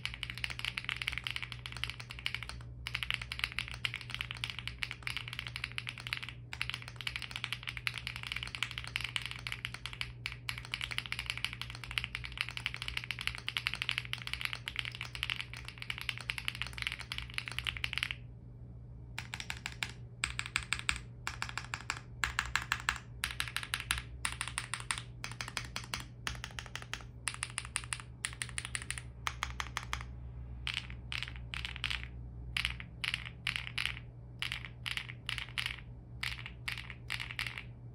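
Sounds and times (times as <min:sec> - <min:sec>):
fast typing on mechanical keyboard: 0:00.0 - 0:18.2, 0:19.2 - 0:37.8
keyboard keys pressed: 0:19.2 - 0:30.1.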